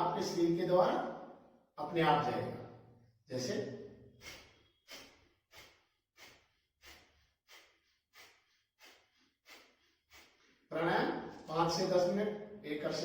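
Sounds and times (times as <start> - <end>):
forceful nasal exhalations: 4.2 - 10.7.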